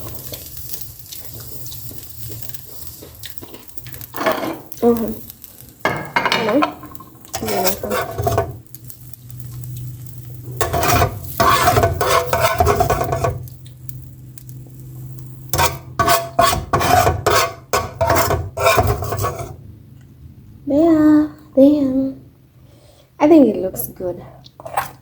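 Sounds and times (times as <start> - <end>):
food sizzling: 0.0 - 19.6
utensil scraping a pan: 5.9 - 8.7, 10.6 - 13.6, 15.5 - 19.6, 24.6 - 25.0.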